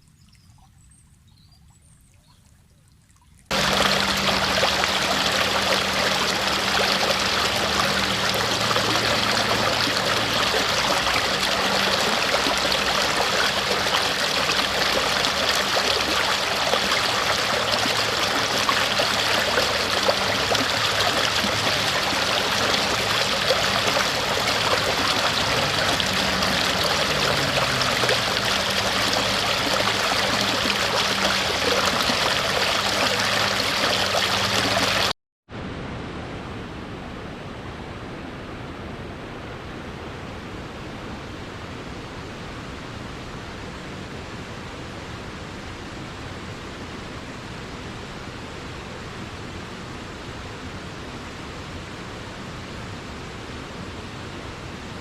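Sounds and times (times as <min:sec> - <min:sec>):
stream water rushing: 0:03.5 - 0:35.1.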